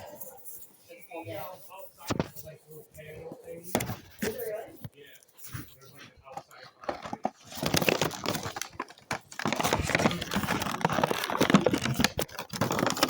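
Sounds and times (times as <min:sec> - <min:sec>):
packaging rustling and crackling: 0:06.4 - 0:13.0.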